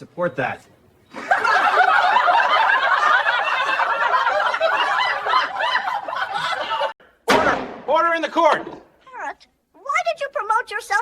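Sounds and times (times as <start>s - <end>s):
crowd laughing: 1.1s - 7.0s.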